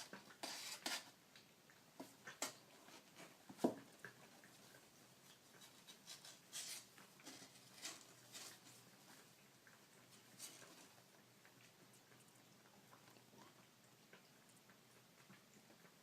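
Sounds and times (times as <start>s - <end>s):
kitten paws scratching surface: 0.0s - 1.2s, 5.3s - 8.8s.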